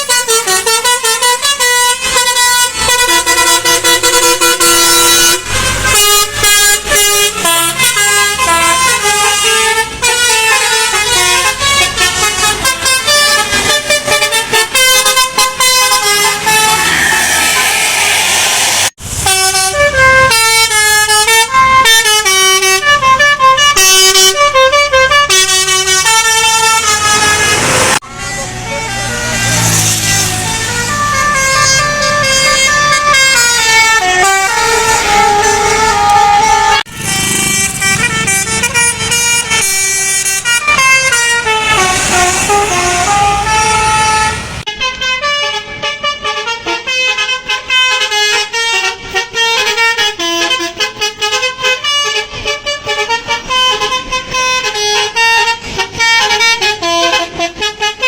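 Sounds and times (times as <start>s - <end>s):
multi-tone bus air horns melody: 0.0s - 58.0s.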